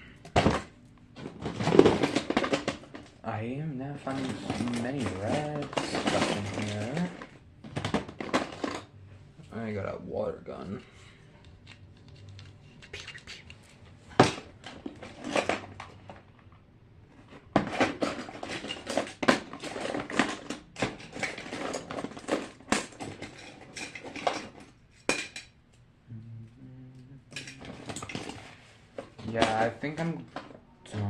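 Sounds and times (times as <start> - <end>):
plastic toys clattering: 0.2 - 3.3, 4.0 - 8.9, 11.6 - 25.6, 27.3 - 30.7.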